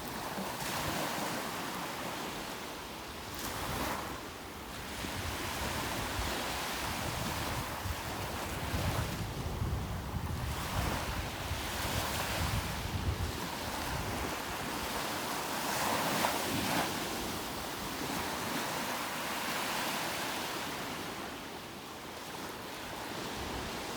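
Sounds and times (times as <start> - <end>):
wind buffeting microphone: 4.8 - 15.0.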